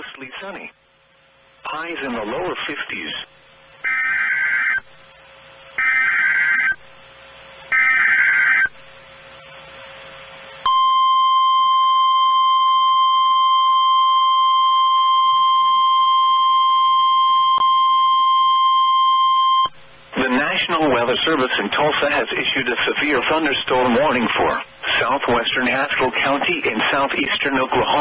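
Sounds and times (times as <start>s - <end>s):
steady warning alarm tone: 3.8s - 4.9s, 5.8s - 6.8s, 7.7s - 8.8s, 10.6s - 19.7s.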